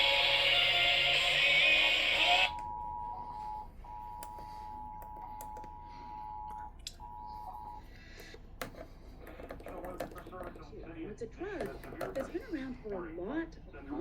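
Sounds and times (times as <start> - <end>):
radio jingle music: 0.0 - 3.6.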